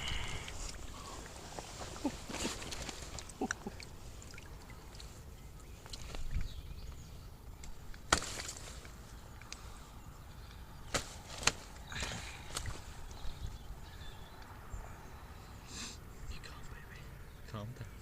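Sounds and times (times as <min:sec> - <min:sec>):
water dripping and splashing: 0:00.0 - 0:09.7.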